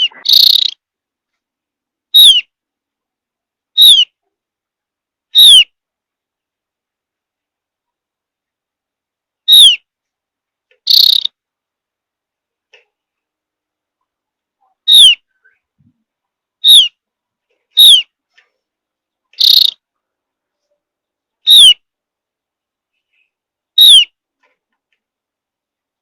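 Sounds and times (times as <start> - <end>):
bird whistled calls: 0.0 - 0.8, 2.2 - 2.5, 3.8 - 4.1, 9.5 - 9.8, 10.9 - 11.3, 14.9 - 15.2, 16.6 - 17.0, 17.8 - 18.1, 19.4 - 19.8, 21.5 - 21.8, 23.8 - 24.1
buzzy bird call: 0.0 - 0.8, 2.1 - 2.5, 3.8 - 4.1, 5.4 - 5.7, 9.5 - 9.8, 10.9 - 11.4, 14.8 - 15.6, 16.6 - 17.0, 17.8 - 18.1, 19.4 - 19.8, 21.4 - 21.8, 23.1 - 24.2.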